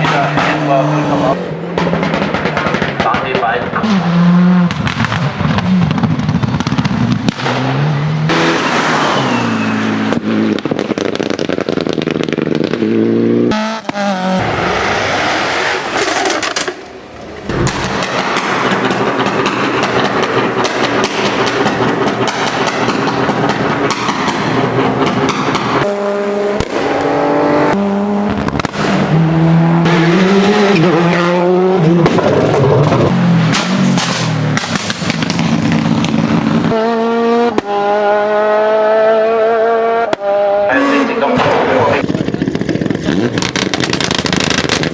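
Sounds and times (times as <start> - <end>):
race car engines revving: 0.0 - 44.9
exhaust pops and crackles: 1.7 - 7.7, 10.0 - 27.2, 28.3 - 29.2, 31.9 - 36.8, 41.4 - 44.9.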